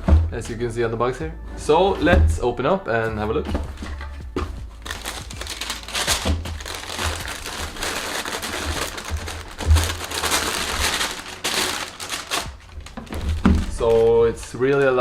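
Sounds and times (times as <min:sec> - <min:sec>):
packing paper crinkling: 0:04.7 - 0:15.0.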